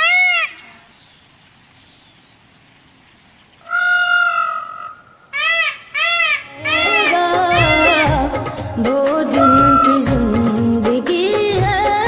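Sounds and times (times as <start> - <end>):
small birds chirping faintly: 0.0 - 8.0
bird calling loudly: 0.0 - 8.2, 9.4 - 10.1.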